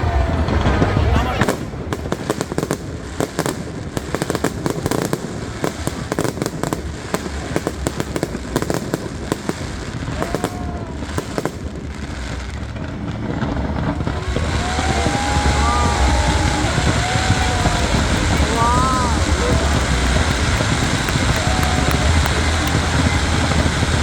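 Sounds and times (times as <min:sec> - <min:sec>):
fireworks crackling: 0:00.0 - 0:24.0
steady rushing noise: 0:13.8 - 0:24.0.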